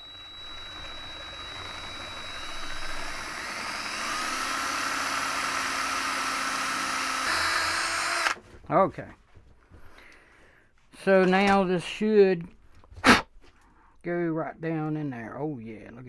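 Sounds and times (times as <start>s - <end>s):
drill whine: 0.0s - 8.4s
power drill boring a hole: 0.0s - 8.4s.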